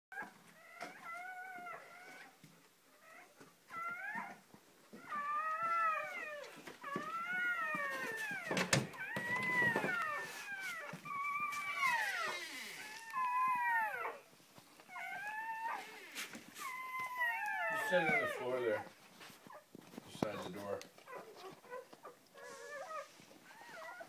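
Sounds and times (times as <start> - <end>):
puppies crying: 3.0 - 24.0.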